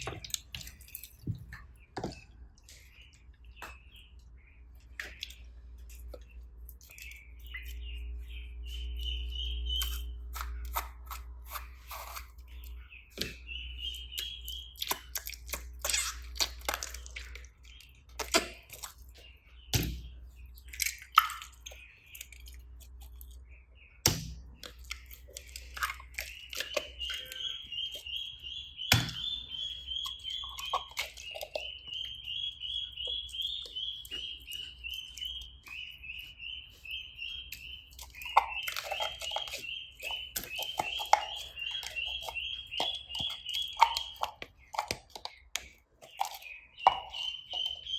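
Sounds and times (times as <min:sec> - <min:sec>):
high repeated chirping: 0:26.3 - 0:45.0, 0:46.1 - 0:47.9.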